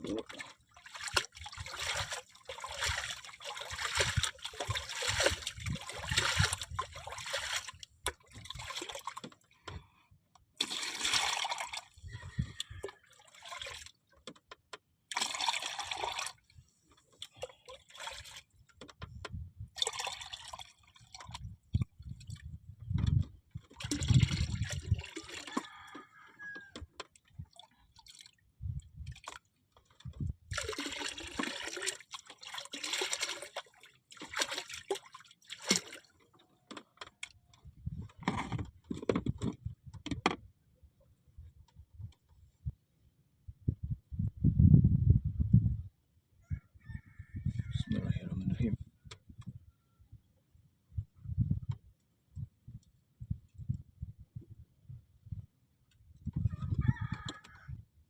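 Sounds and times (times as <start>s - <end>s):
water splashing and sloshing: 0.0s - 40.4s
dull low thumps: 43.5s - 46.0s, 50.9s - 55.5s.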